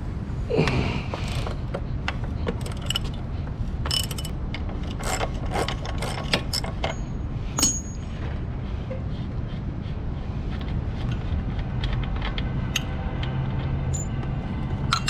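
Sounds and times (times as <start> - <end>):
steady low rumble: 0.0 - 15.0
metal clinks: 6.6 - 8.1.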